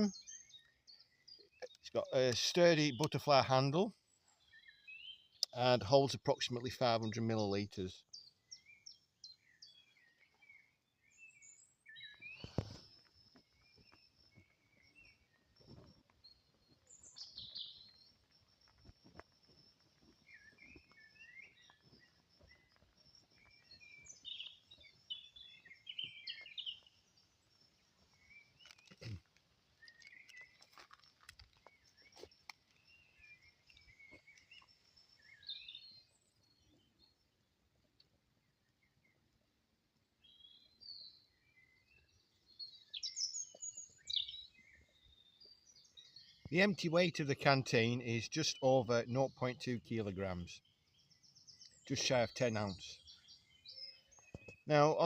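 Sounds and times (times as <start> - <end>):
birds chirping: 0.0 - 55.0.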